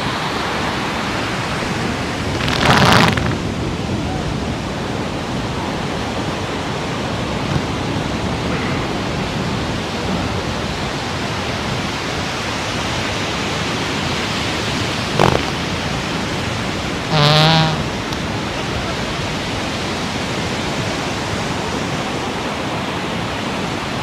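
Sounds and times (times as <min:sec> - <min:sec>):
ocean surf: 0:00.0 - 0:24.0
wind on microphone: 0:00.0 - 0:24.0
short sharp sound: 0:17.1 - 0:17.9.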